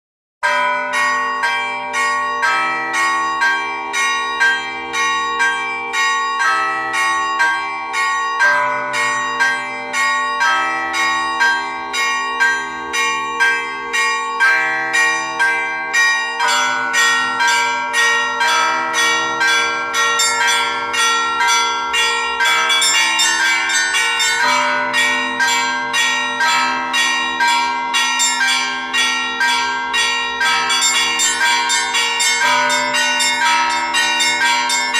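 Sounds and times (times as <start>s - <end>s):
deep bells humming: 0.6s - 34.9s
small bells striking quickly: 20.2s - 34.9s.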